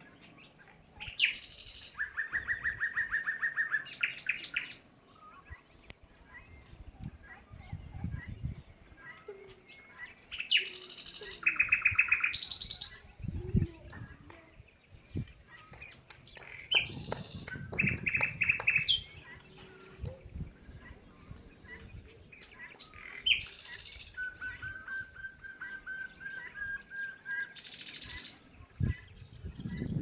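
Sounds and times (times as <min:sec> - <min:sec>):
songbirds chirping: 0:00.0 - 0:30.0
harsh bird calls: 0:15.1 - 0:30.0.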